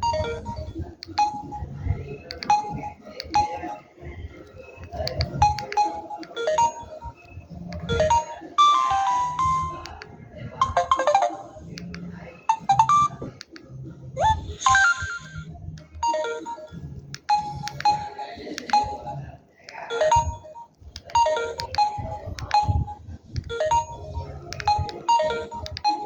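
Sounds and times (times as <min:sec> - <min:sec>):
mobile phone ringtone melody: 0:00.0 - 0:01.7, 0:05.4 - 0:10.0, 0:10.6 - 0:11.6, 0:12.5 - 0:13.2, 0:14.2 - 0:26.0.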